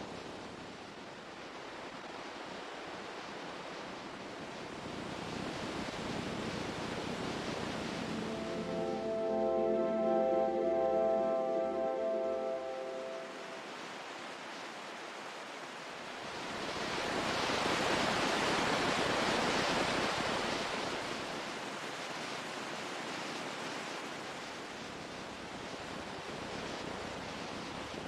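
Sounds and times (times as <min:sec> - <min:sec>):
ocean wave washing in: 0:07.7 - 0:13.9.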